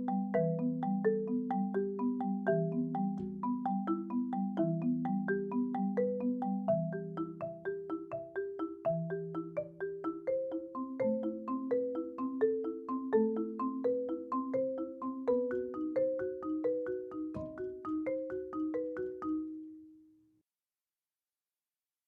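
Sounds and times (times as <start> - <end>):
marimba played with mallets: 0.0 - 20.0.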